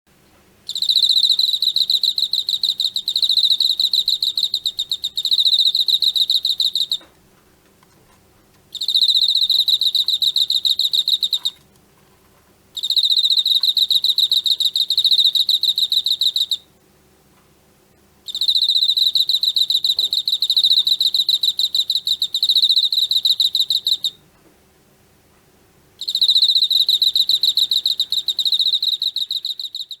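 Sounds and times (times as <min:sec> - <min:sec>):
cricket chirping trills: 0:00.7 - 0:07.1, 0:08.7 - 0:11.6, 0:12.8 - 0:16.7, 0:18.3 - 0:24.2, 0:26.0 - 0:30.0.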